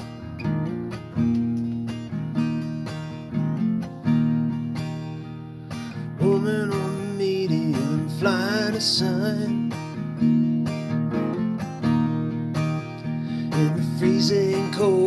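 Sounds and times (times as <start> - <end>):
acoustic guitar strumming: 0.0 - 15.0.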